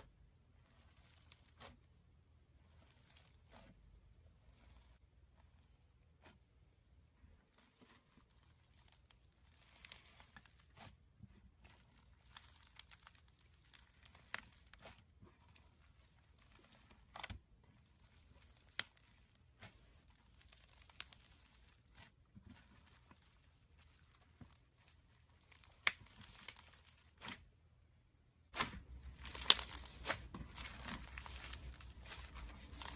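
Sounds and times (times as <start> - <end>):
slime crackling and popping: 7.6 - 10.9, 11.6 - 27.4, 28.5 - 32.9.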